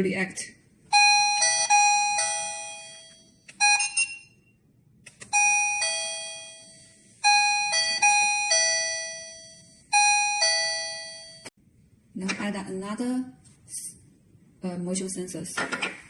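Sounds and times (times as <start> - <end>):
electronic doorbell chime: 0.9 - 4.4, 5.3 - 11.5.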